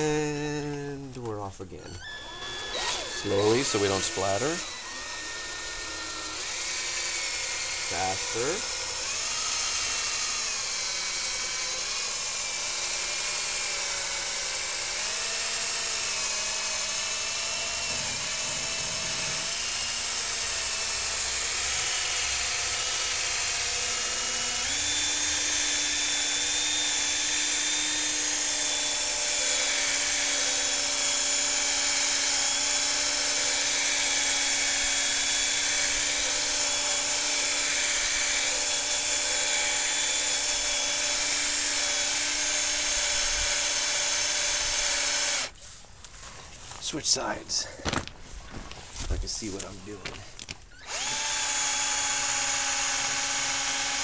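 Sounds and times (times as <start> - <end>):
cordless drill motor whine: 0.0 - 45.6, 49.5 - 54.0.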